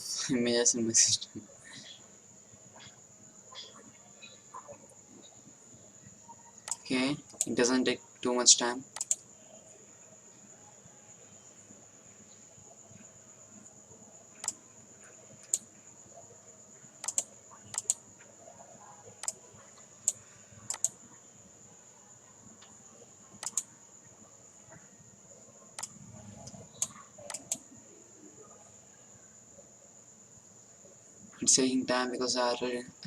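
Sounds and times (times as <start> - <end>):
computer mouse clicks: 6.6 - 7.6, 8.9 - 9.3, 14.4 - 14.6, 15.4 - 15.7, 17.0 - 18.0, 19.2 - 19.4, 20.0 - 21.0, 22.6 - 23.7, 25.8 - 27.7.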